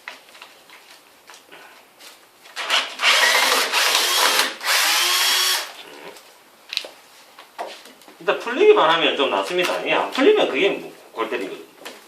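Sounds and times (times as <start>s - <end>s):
drill-driver running: 2.6s - 5.8s.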